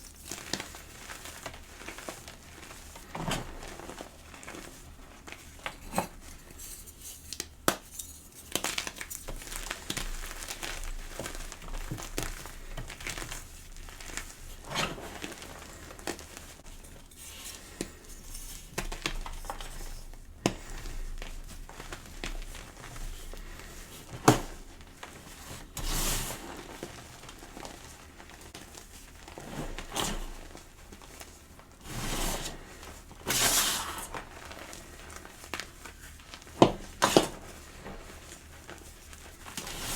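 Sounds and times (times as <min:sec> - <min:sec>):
chalk crunching and crackling: 0:00.0 - 0:39.9.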